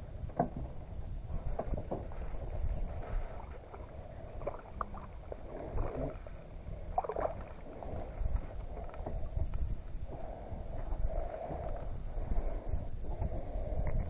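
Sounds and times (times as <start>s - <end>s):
boat low rumble: 0.0s - 14.0s.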